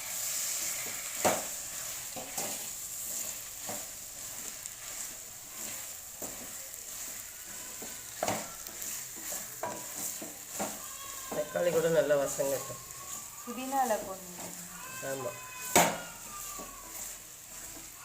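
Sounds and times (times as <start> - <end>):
onions sizzling in oil: 0.0 - 18.0
spoon knocking against pan: 7.8 - 11.6.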